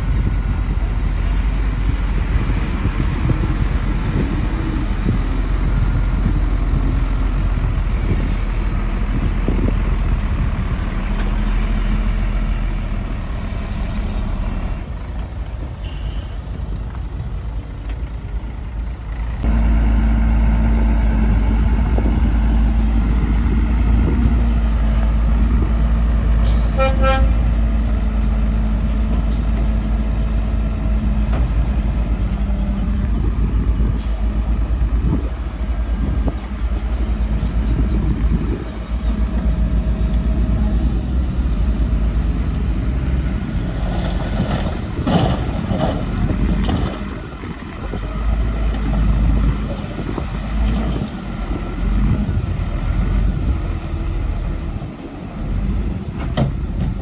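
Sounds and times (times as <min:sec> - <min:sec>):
diesel machinery engine running: 0:00.0 - 0:57.0
short horn toot: 0:26.5 - 0:27.4.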